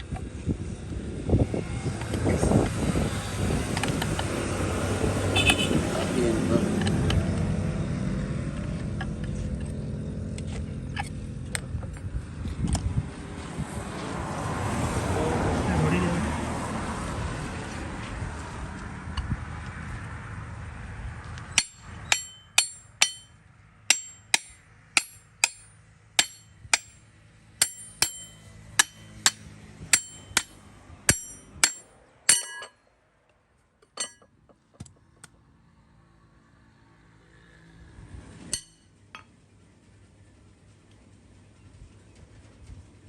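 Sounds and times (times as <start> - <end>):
hammer striking steel: 21.6 - 27.0, 27.6 - 32.8, 38.5 - 38.8.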